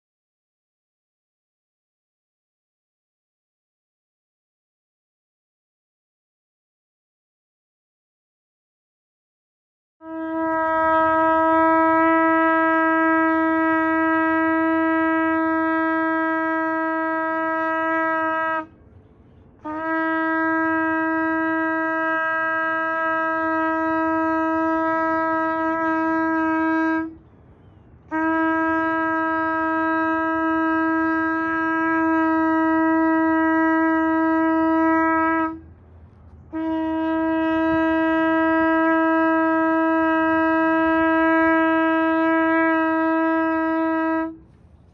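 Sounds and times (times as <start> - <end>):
shofar blasts: 10.0 - 18.8, 19.6 - 27.2, 28.1 - 35.7, 36.5 - 44.5.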